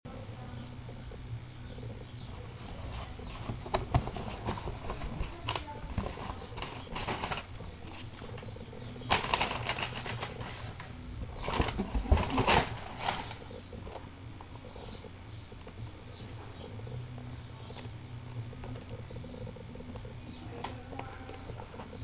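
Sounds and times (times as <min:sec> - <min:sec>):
paper and cardboard rustling: 0:02.3 - 0:15.1.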